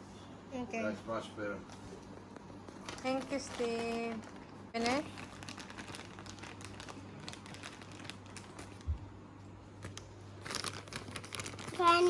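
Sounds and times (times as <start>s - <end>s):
packaging crinkling: 2.7s - 9.1s, 9.7s - 12.0s.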